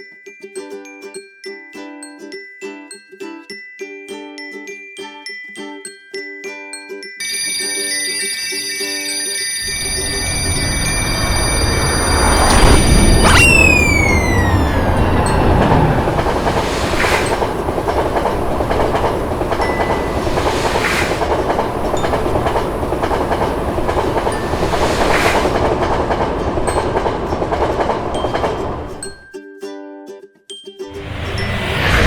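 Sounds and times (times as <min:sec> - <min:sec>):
train wheels rumbling on rails: 0:09.6 - 0:29.2.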